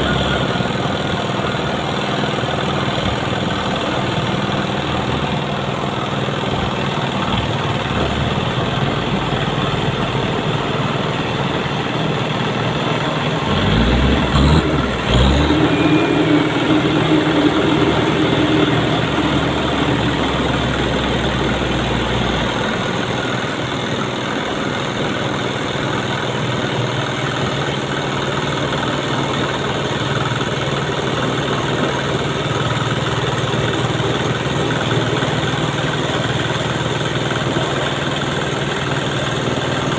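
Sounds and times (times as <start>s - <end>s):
truck engine running: 0.0s - 39.9s.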